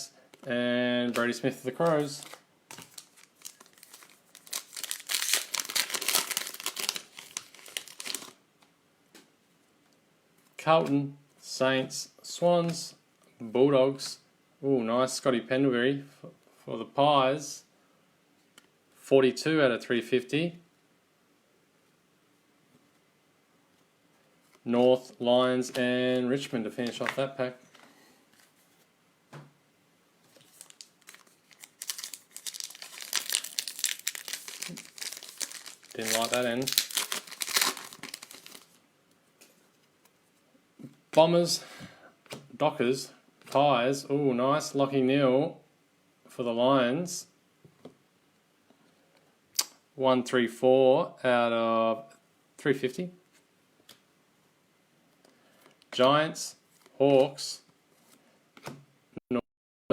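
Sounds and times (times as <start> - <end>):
foil wrapper tearing and crinkling: 2.1 - 8.4, 30.4 - 38.8.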